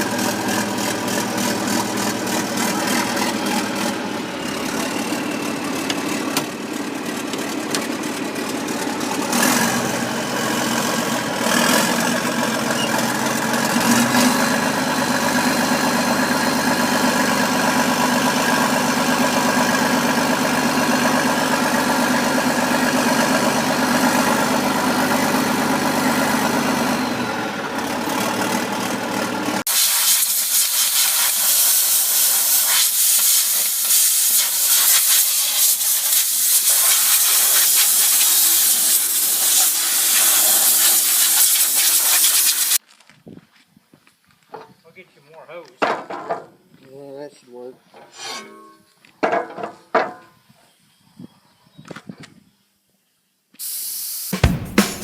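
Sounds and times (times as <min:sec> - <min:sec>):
motor-driven machine running: 0:00.0 - 0:19.2, 0:36.6 - 0:41.2.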